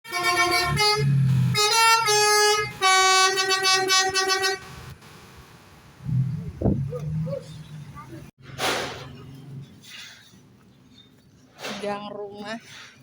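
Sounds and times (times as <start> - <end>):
musical air horn tune: 0.1 - 4.8.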